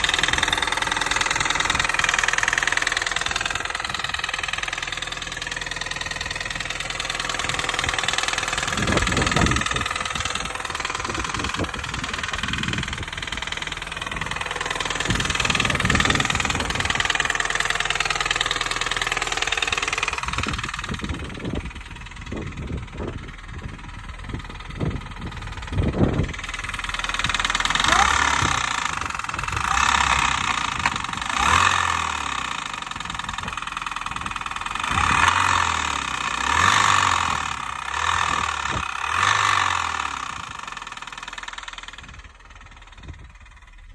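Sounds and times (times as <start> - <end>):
car engine running: 0.0 - 43.9
sharp engine knocks: 6.2 - 31.7.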